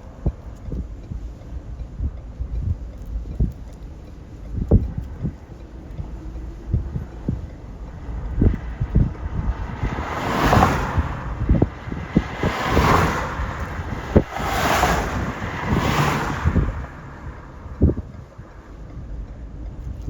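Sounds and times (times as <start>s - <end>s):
wind buffeting microphone: 0.0s - 20.0s
whooshes: 8.2s - 18.7s.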